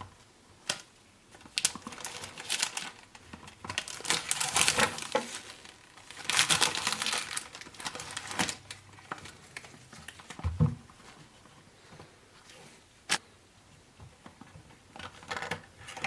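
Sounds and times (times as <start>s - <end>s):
packaging crinkling and rustling: 0.6s - 11.2s.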